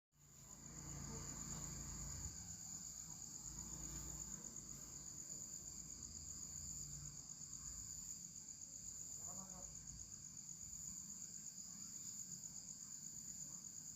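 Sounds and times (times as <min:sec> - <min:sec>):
insects chirring: 0:00.2 - 0:13.9.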